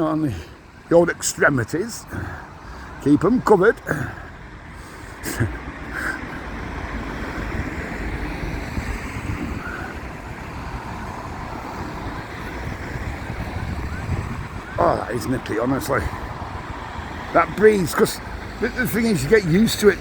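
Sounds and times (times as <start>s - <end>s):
road traffic rumble: 0.0s - 20.0s
wind buffeting microphone: 4.4s - 20.0s.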